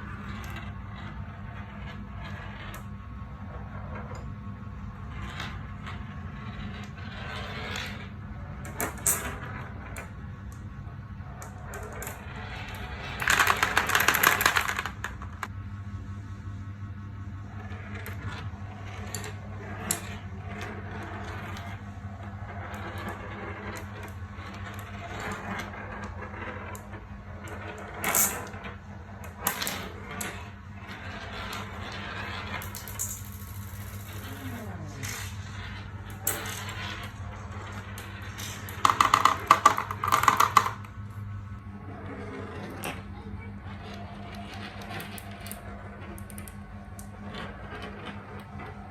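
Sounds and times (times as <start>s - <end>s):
steady low hum: 0.0s - 48.9s
marbles clicking through marble run: 11.4s - 15.5s, 29.3s - 40.9s.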